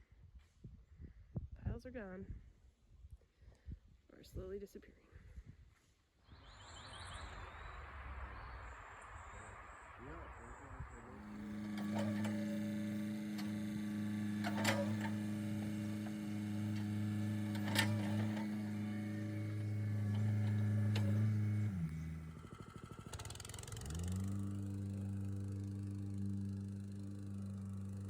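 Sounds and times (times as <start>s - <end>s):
earthmoving machinery engine running: 6.4s - 28.0s.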